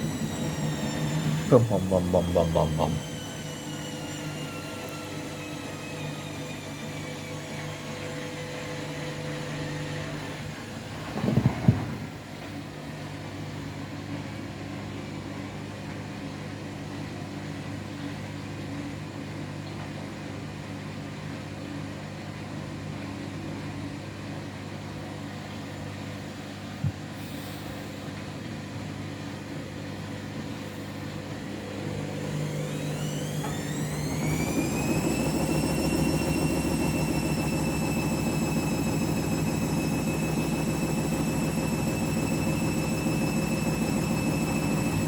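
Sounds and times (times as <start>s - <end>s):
washing machine motor whine: 0.0s - 13.3s, 27.7s - 45.0s.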